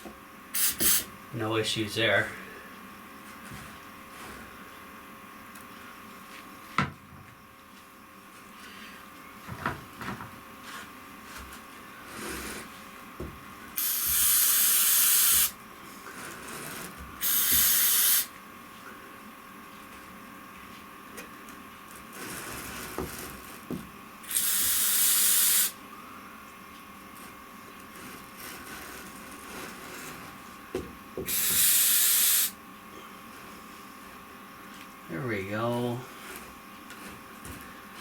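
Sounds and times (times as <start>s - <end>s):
faint steady hum: 0.0s - 38.0s
aerosol can spraying hiss: 0.6s - 1.1s, 13.8s - 15.5s, 17.2s - 18.3s, 24.3s - 25.8s, 31.3s - 32.6s.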